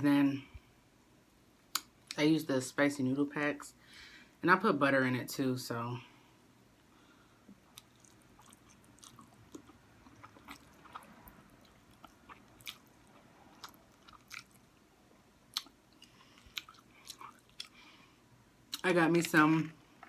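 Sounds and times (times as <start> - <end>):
lip smacks and clicks: 1.7 - 1.9
wet chewing and slurping noodles: 7.6 - 14.8, 15.5 - 17.9.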